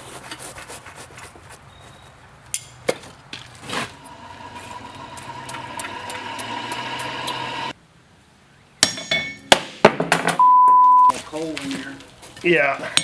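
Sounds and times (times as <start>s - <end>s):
tools knocking and clinking: 8.8s - 9.5s.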